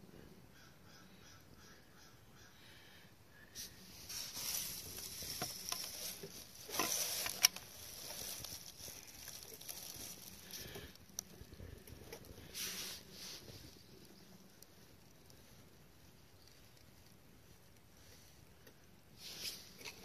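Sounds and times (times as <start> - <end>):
packaging rustling and crinkling: 4.0 - 14.2.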